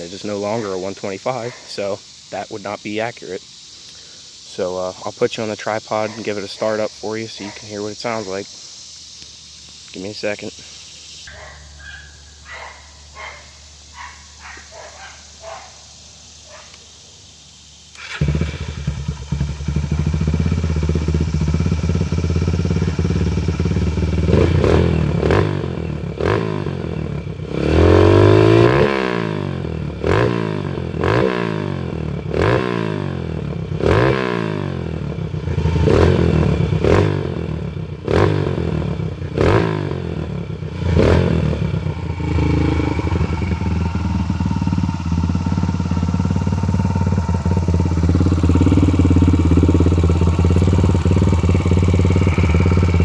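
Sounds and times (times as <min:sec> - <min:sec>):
motorbike engine revving: 0:17.9 - 0:53.0.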